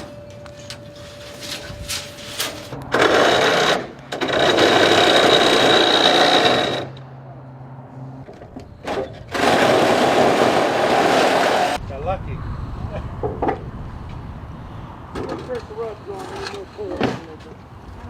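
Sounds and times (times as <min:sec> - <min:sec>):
reciprocating saw cutting: 0:02.9 - 0:07.0.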